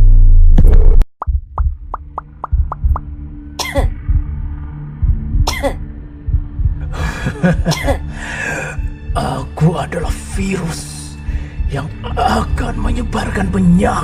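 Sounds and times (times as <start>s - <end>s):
background music with low beat: 0.6s - 14.0s
person coughing: 3.6s - 4.0s, 5.5s - 5.8s, 7.6s - 8.1s.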